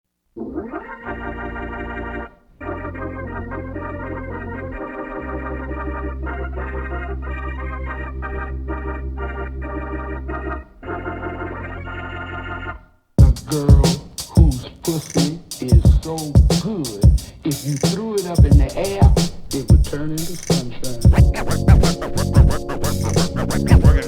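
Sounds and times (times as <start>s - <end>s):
organ playing chords: 0.4s - 13.5s, 18.6s - 24.0s.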